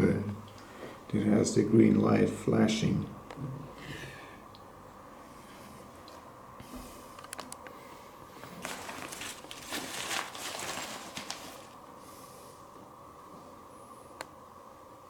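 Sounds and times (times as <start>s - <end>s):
faint steady hum: 0.0s - 15.0s
packaging rustling: 8.4s - 11.9s.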